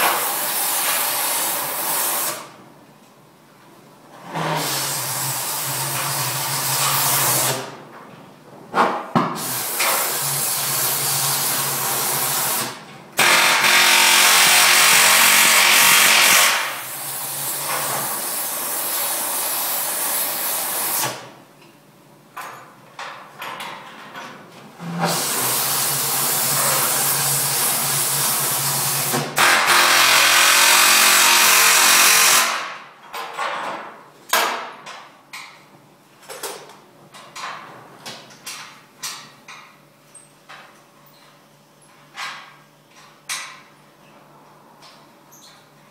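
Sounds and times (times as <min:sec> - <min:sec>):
power tool running on steel: 0:10.0 - 0:17.4, 0:25.1 - 0:32.7.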